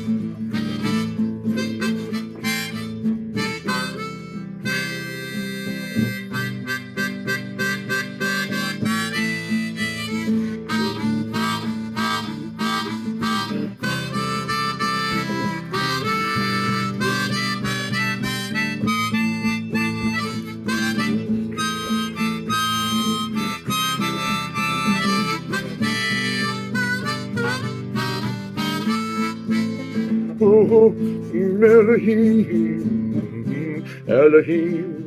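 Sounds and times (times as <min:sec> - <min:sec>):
harmonica melody: 0:00.0 - 0:35.0
strummed acoustic guitar: 0:00.0 - 0:35.0.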